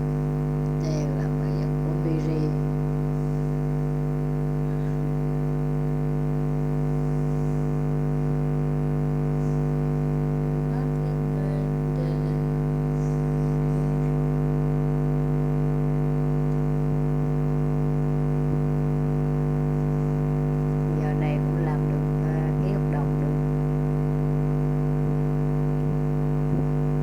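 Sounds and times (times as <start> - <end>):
electrical drone: 0.0 - 14.7.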